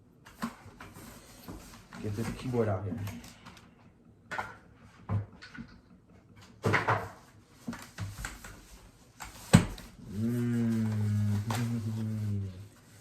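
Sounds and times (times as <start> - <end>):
packaging rustling and scraping: 7.2 - 13.0.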